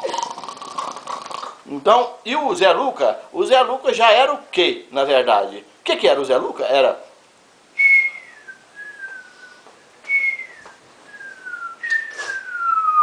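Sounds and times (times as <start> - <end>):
person whistling: 7.8 - 13.0.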